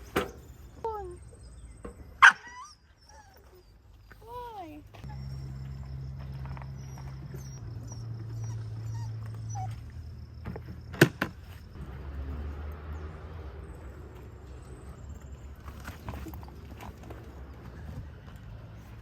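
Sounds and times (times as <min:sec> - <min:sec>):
dog whining: 0:02.2 - 0:03.8, 0:05.0 - 0:10.1.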